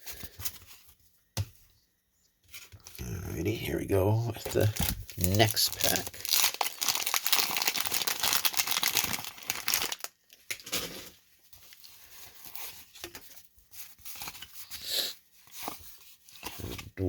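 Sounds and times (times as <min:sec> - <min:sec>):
wax paper wrapper tearing: 0:04.6 - 0:10.1.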